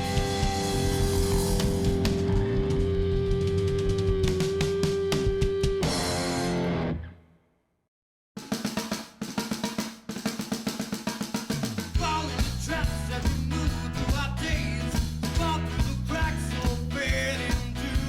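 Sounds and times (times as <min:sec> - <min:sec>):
drum hits: 0:00.0 - 0:06.3, 0:08.4 - 0:18.0
rock music: 0:00.0 - 0:07.2, 0:11.6 - 0:18.0.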